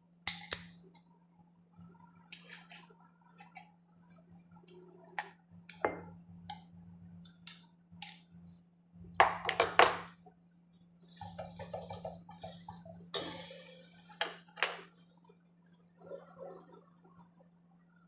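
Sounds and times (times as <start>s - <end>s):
utensils and dishes clinking: 11.0s - 14.9s.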